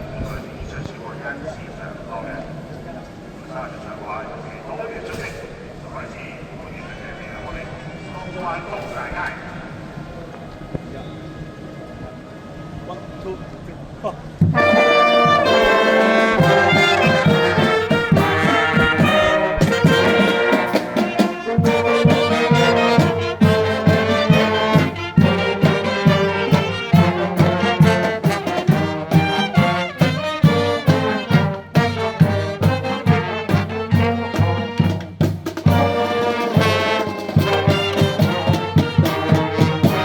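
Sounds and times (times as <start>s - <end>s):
marching band playing: 14.4s - 40.0s
steady drum beat: 14.4s - 40.0s
trumpets and trombones: 14.4s - 40.0s.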